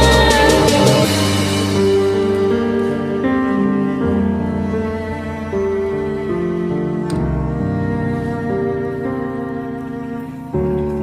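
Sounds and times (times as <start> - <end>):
slow sad string music: 0.0 - 11.0.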